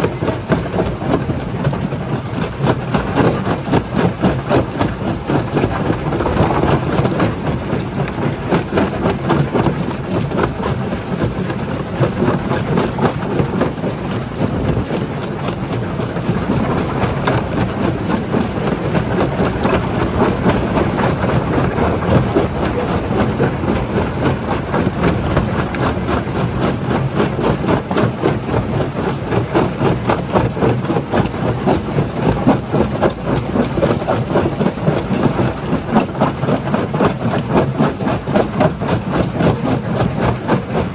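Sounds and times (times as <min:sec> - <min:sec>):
machinery drone: 0:03.2 - 0:40.9
jaw crusher crushing rock: 0:05.4 - 0:10.2.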